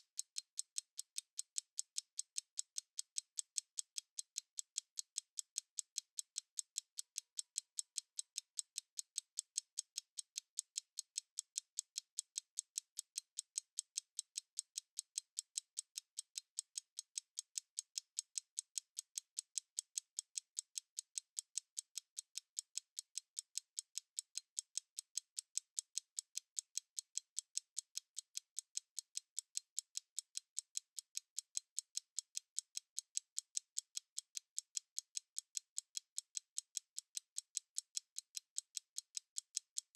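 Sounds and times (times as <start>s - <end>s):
stopwatch ticking: 0.0s - 39.9s.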